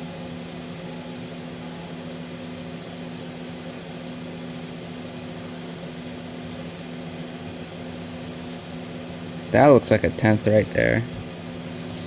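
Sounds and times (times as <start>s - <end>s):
fan-like noise: 0.0s - 12.0s
low machine drone: 0.0s - 12.0s.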